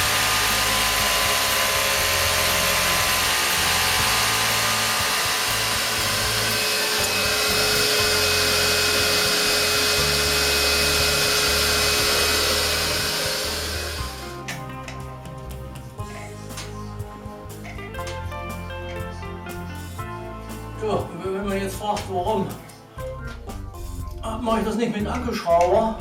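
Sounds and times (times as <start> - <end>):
vacuum cleaner rushing: 0.0 - 14.6.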